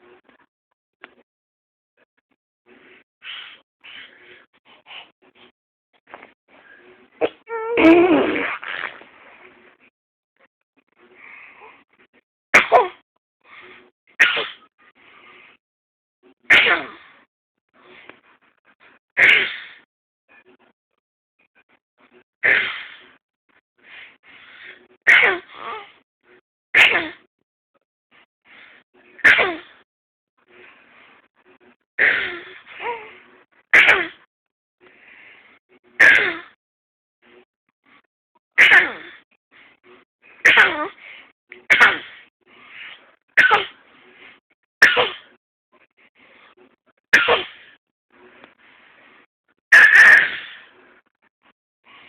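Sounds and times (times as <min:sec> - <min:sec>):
baby coughing: 0:07.2 - 0:08.8, 0:12.6 - 0:13.0, 0:16.5 - 0:17.0, 0:25.1 - 0:25.8, 0:26.8 - 0:27.2, 0:29.2 - 0:29.7, 0:32.0 - 0:33.0, 0:33.8 - 0:34.2, 0:36.0 - 0:36.6, 0:38.6 - 0:39.1, 0:40.5 - 0:40.9, 0:41.7 - 0:42.0, 0:43.4 - 0:43.7, 0:44.8 - 0:45.2, 0:47.2 - 0:47.5, 0:49.8 - 0:50.4.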